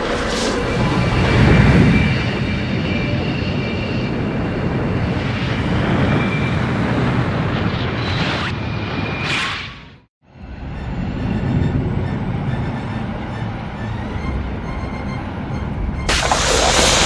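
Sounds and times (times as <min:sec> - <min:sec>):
whooshes: 0:00.0 - 0:02.2, 0:16.1 - 0:17.0
jet-like rumble with whine: 0:00.0 - 0:09.3, 0:15.8 - 0:17.0.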